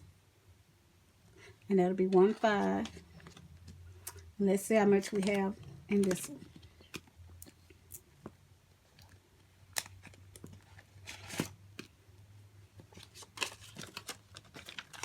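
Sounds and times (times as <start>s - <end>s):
paper banknotes rustling: 12.9s - 15.0s.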